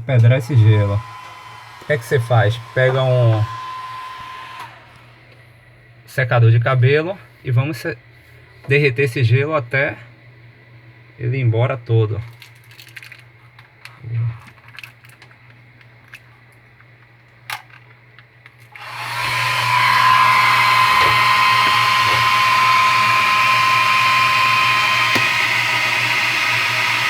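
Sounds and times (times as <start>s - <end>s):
hair dryer blowing with high whine: 0.0s - 5.3s, 18.7s - 27.0s.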